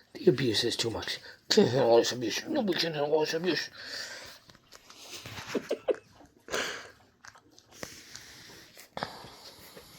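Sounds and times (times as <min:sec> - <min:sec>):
puppies chewing: 0:01.6 - 0:09.9
puppies snuffling: 0:03.5 - 0:09.9.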